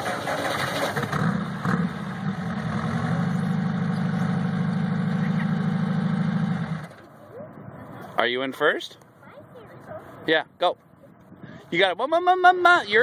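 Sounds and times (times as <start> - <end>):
engine idling: 0.0 - 7.2.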